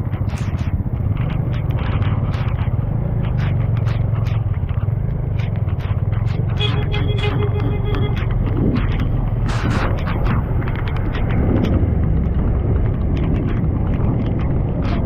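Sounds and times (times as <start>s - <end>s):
motorbike engine: 0.0s - 15.0s
wind buffeting microphone: 8.1s - 15.0s.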